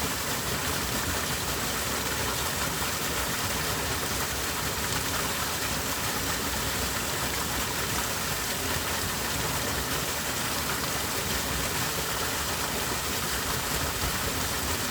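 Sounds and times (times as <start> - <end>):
stream rushing over rocks: 0.0 - 14.9.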